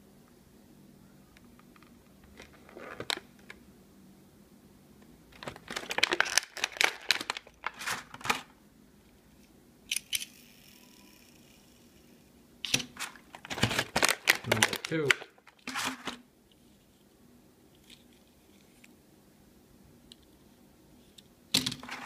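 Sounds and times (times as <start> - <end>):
plastic crinkling: 5.3 - 8.5, 12.8 - 16.2
cardboard tearing: 13.0 - 16.1.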